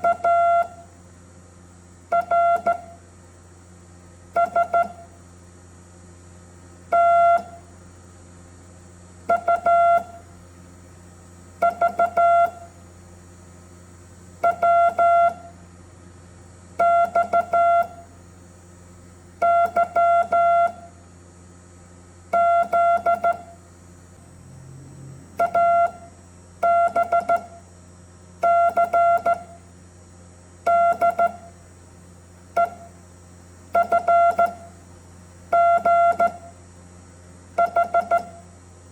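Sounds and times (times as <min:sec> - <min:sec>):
morse code beeps: 0:11.6 - 0:12.6, 0:14.4 - 0:15.4, 0:16.8 - 0:18.0, 0:25.4 - 0:26.0, 0:37.6 - 0:38.4
low hum: 0:23.2 - 0:26.2.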